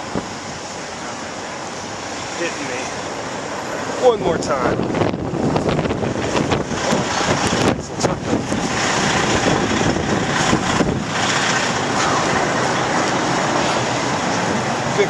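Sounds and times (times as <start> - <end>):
blizzard wind on microphone: 0.0 - 15.0.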